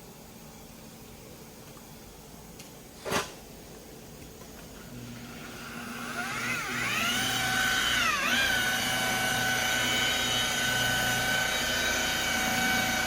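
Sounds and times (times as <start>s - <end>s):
polisher motor whine: 4.9s - 13.0s.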